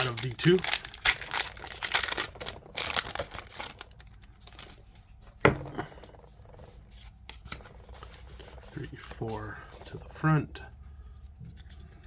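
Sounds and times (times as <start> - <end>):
foil wrapper crinkling: 0.0 - 5.0.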